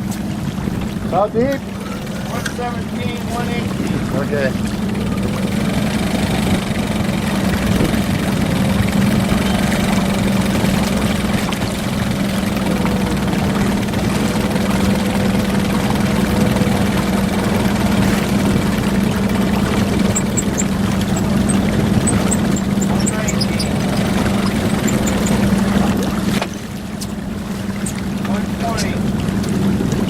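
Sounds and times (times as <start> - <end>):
boat motor droning: 0.0 - 30.0.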